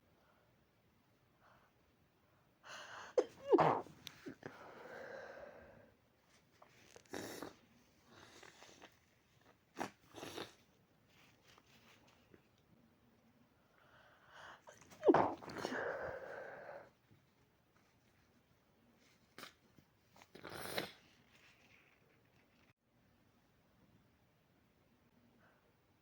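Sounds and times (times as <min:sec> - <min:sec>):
person sneezing: 0:03.2 - 0:04.5, 0:14.9 - 0:16.0.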